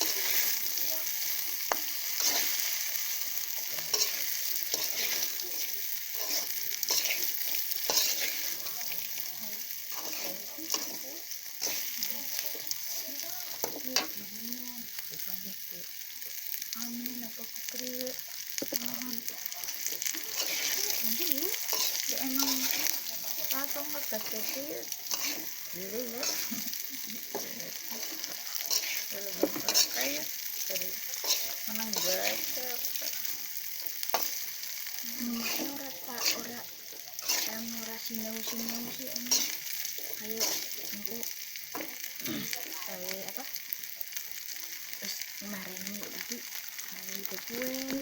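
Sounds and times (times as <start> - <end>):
spatula scraping a pan: 0.0 - 14.2, 19.1 - 41.9
food sizzling in hot oil: 0.0 - 48.0.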